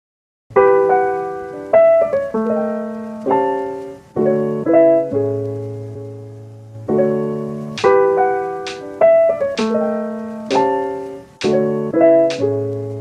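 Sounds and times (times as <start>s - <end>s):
slow piano music: 0.5s - 13.0s.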